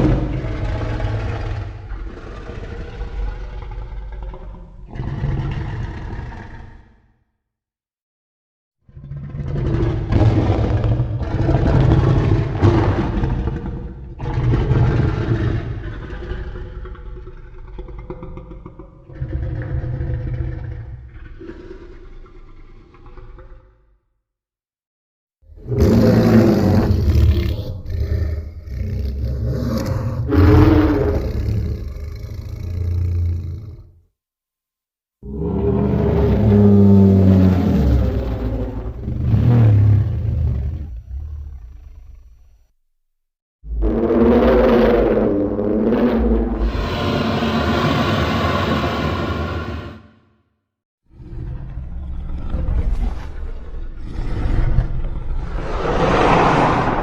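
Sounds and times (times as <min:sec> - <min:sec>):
deep monster roar: 0:00.0 - 0:07.1, 0:08.9 - 0:23.8, 0:25.5 - 0:34.0, 0:35.2 - 0:42.1, 0:43.7 - 0:50.2, 0:53.7 - 0:57.0
low mechanical monster cry: 0:25.6 - 0:33.9, 0:35.2 - 0:42.4, 0:43.7 - 0:50.2
heavy low rumble: 0:55.4 - 0:57.0.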